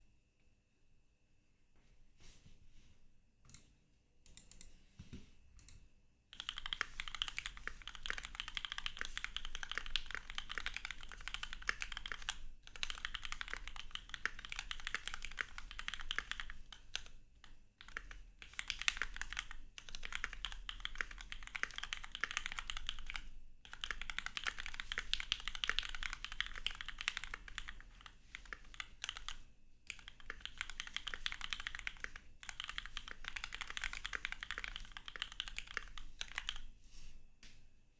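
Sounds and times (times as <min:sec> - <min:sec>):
mechanical keyboard typing: 0:06.4 - 0:36.7.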